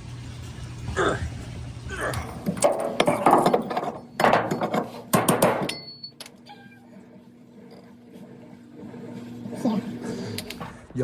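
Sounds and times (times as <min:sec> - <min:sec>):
metal parts clanking: 0:02.5 - 0:06.4
metallic ring: 0:05.6 - 0:06.3.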